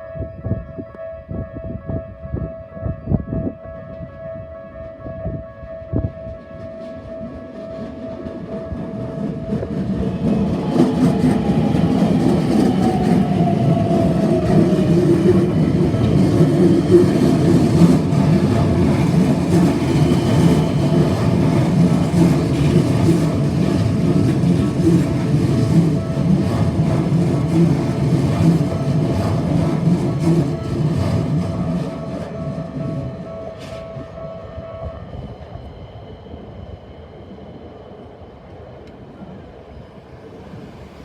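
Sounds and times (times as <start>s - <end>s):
level crossing warning bell: 3.7s - 35.5s
train wheels clattering on rails: 6.6s - 34.2s
falling whine: 8.8s - 34.2s.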